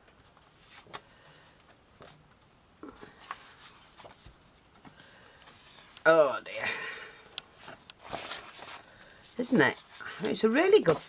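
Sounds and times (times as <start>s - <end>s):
paper rustling and tapping: 7.3s - 11.0s.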